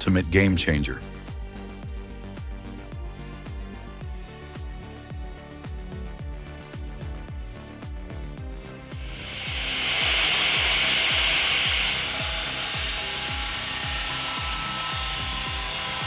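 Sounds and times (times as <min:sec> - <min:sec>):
background music with beat: 0:00.0 - 0:16.0
power saw cutting wood: 0:09.1 - 0:16.0.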